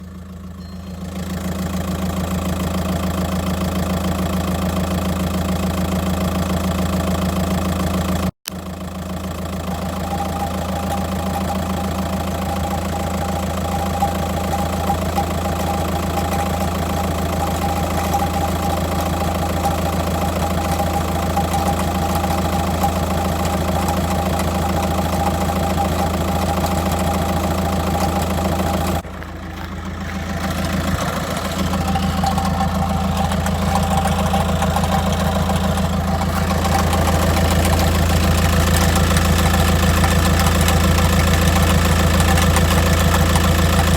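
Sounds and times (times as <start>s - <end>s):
diesel engine idling: 0.0s - 43.9s
clunking rattle: 9.4s - 43.9s.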